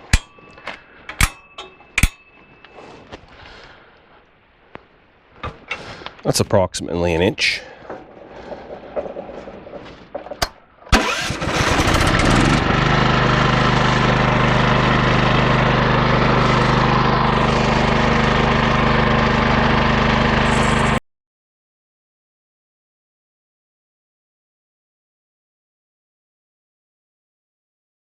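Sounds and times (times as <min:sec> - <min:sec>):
small gasoline engine revving: 0:10.9 - 0:21.0.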